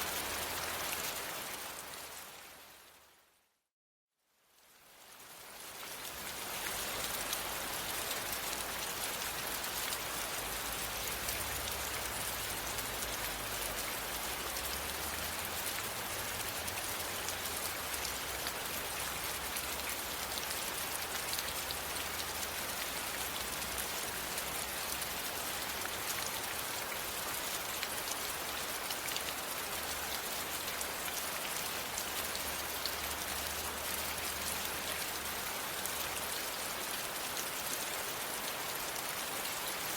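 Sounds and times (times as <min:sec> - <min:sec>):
steady rain falling: 0:00.0 - 0:03.3, 0:04.3 - 0:39.9.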